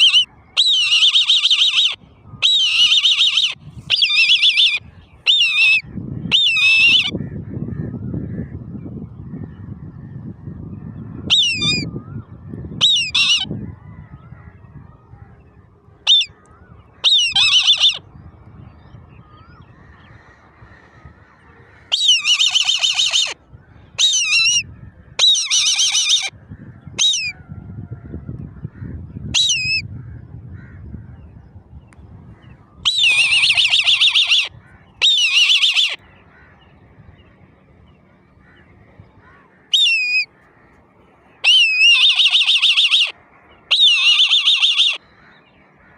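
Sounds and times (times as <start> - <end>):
eaglets calling shrilly: 0.0 - 7.2, 11.2 - 12.2, 12.8 - 13.6, 16.0 - 18.0, 19.2 - 26.3, 27.0 - 27.4, 29.3 - 29.8, 32.7 - 36.6, 38.4 - 45.9.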